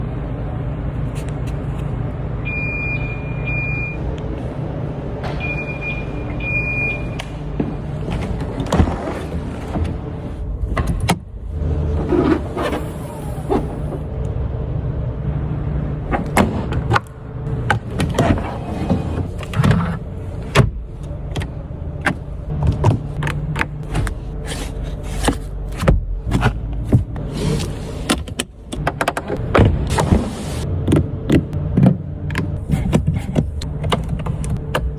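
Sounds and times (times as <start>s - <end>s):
car engine idling: 19.3s - 24.4s.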